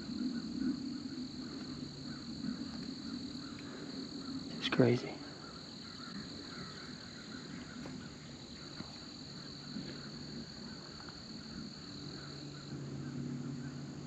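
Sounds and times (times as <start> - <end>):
high-pitched insect trill: 0.0 - 14.0
faint ticks: 2.6 - 3.8.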